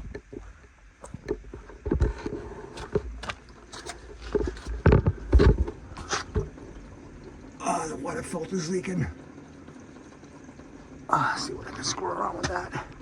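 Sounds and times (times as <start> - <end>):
footsteps and thumps: 0.2 - 6.6.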